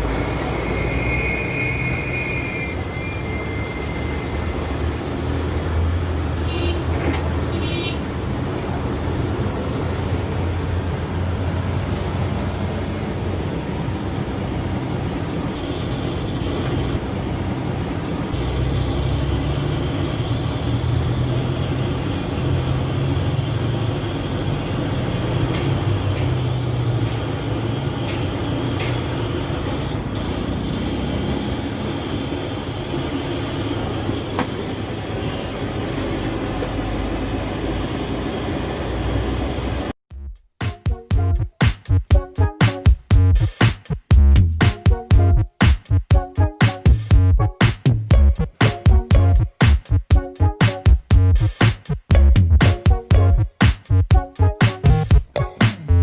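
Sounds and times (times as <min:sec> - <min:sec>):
engine droning: 0:00.0 - 0:40.0.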